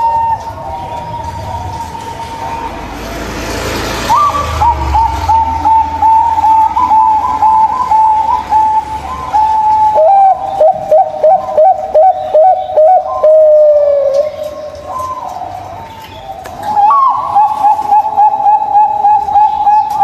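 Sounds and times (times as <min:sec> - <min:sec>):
doves cooing: 0:00.0 - 0:20.0.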